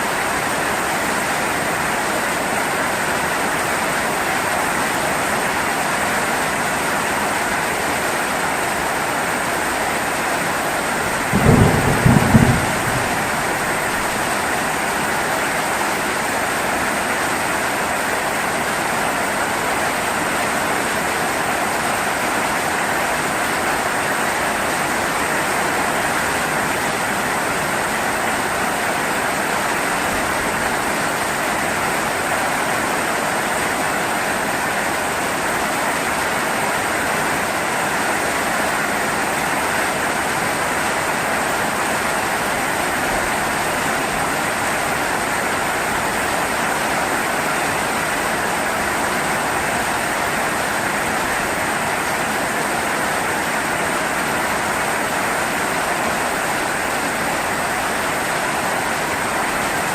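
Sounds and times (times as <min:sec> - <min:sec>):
heavy rain falling: 0:00.0 - 0:59.9
thunder clap: 0:11.1 - 0:14.8.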